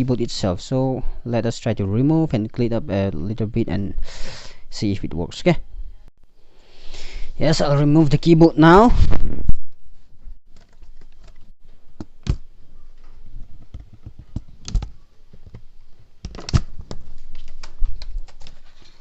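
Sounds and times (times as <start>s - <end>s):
plastic clips snapping: 16.2s - 18.6s.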